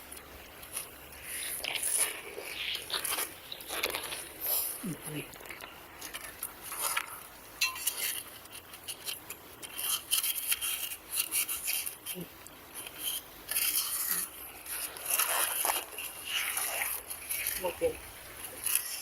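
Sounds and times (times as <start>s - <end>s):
high-pitched scraping and rubbing: 6.7s - 19.0s.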